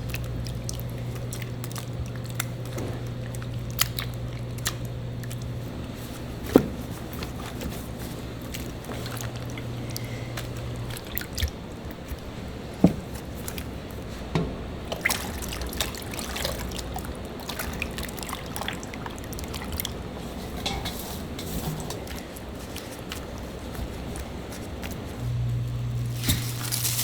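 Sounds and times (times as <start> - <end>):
liquid trickling and dripping: 0.0 - 27.0
low steady hum: 0.0 - 27.0
kitchen clicks and knocks: 14.3 - 14.6, 20.4 - 22.2.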